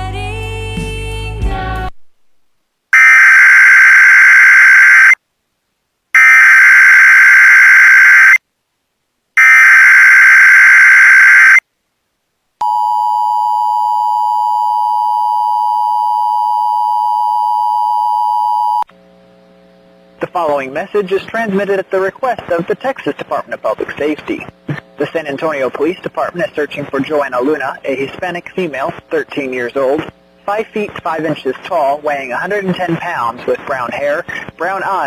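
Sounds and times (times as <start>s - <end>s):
data tone bursts: 3.0s - 5.2s, 6.2s - 8.4s, 9.4s - 11.6s.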